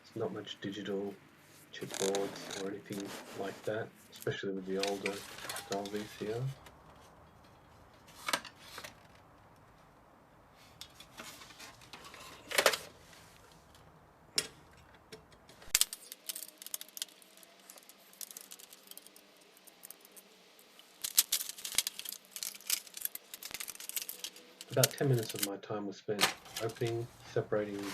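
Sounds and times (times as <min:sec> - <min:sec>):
metal parts clicking and rattling: 0:15.7 - 0:25.5.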